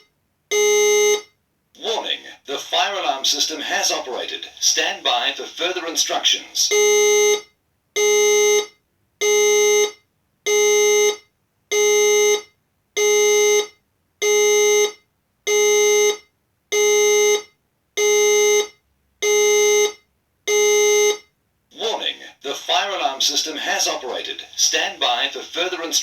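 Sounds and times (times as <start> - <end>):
fire alarm pulsing electronic tone: 0.5 - 1.3, 6.7 - 21.3.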